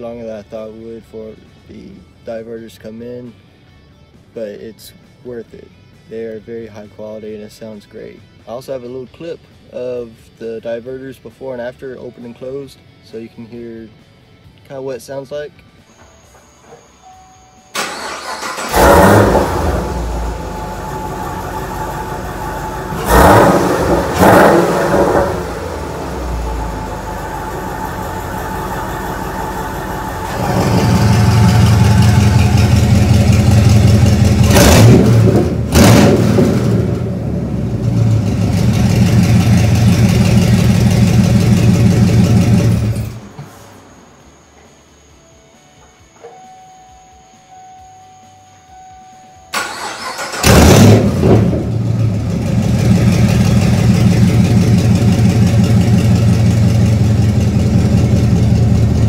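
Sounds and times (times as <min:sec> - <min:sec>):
car engine idling and revving: 0:17.8 - 0:43.4, 0:50.0 - 0:59.0.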